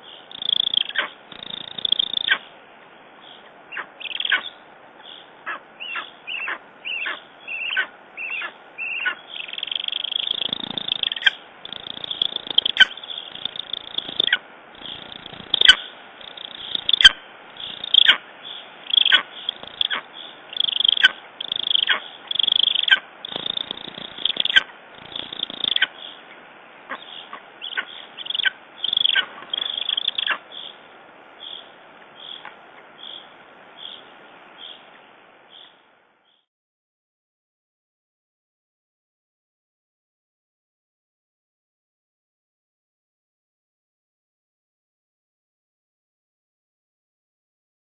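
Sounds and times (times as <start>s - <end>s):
eagle calling: 0.0s - 2.5s, 3.3s - 26.2s, 26.9s - 30.8s.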